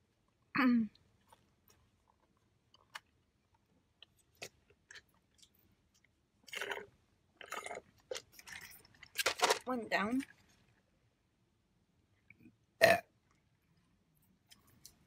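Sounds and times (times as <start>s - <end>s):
close chewing: 1.2s - 9.2s.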